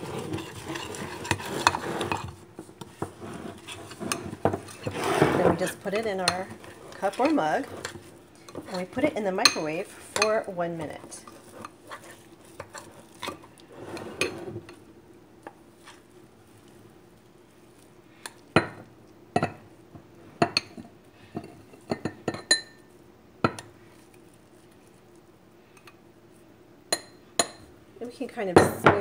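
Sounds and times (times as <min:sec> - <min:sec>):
spoon scraping glass: 0:00.0 - 0:02.3.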